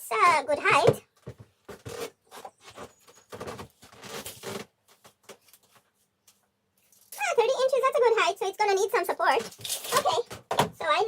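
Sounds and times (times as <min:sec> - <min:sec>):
hands rustling and scraping things: 0:01.2 - 0:07.3.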